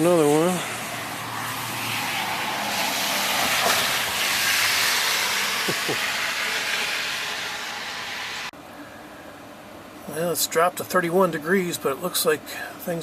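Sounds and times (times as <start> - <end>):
vehicle passing by: 0.0 - 8.5.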